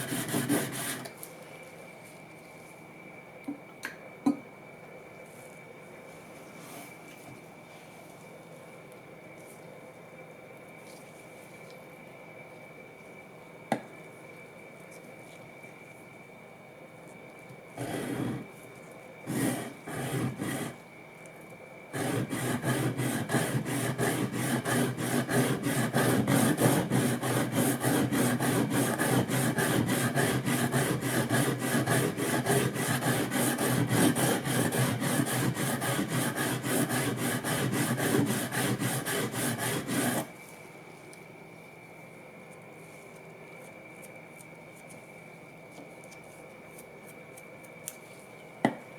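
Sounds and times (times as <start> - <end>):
blade rubbing on sharpening stone: 22.0 - 40.3.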